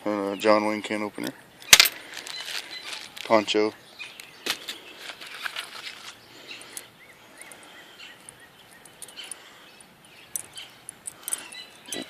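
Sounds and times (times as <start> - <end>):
small items clicking and rustling: 1.2 - 3.4, 4.2 - 6.9, 10.3 - 12.0.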